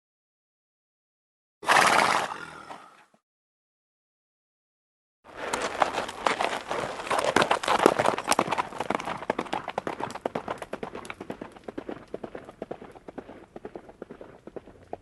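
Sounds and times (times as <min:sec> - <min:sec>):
horses galloping: 0:05.3 - 0:15.0.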